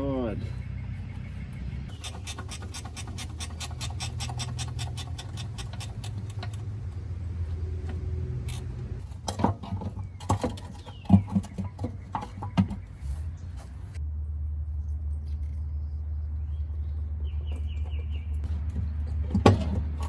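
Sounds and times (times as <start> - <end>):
metal clanks and knocks: 0.9 - 7.0, 7.8 - 14.0, 18.4 - 20.0
ratchet wrench clicking: 1.9 - 6.7, 8.5 - 8.7.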